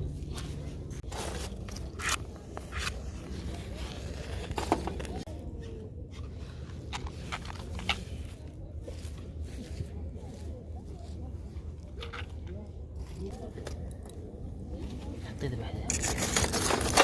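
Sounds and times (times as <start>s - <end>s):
scrapes: 15.9s - 17.0s.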